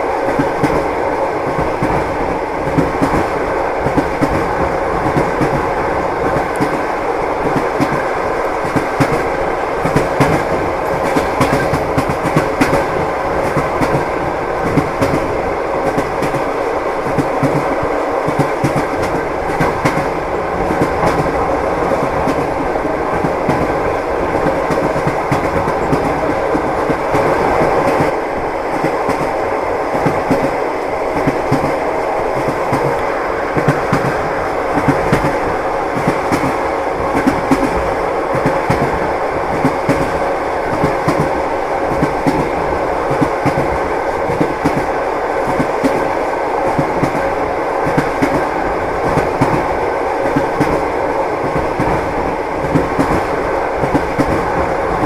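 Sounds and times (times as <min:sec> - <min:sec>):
train wheels clattering over rail joints: 0:00.3 - 0:28.2.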